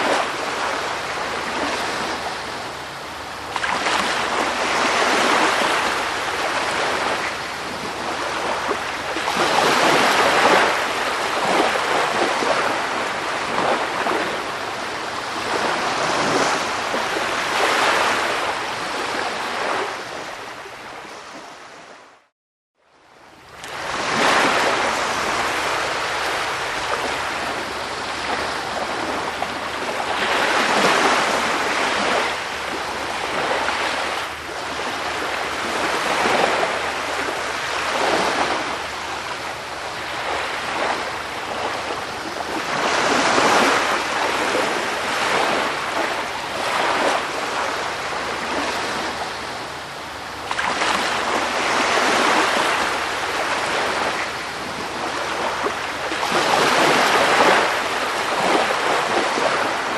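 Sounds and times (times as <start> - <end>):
waves breaking and washing: 0.0 - 59.9.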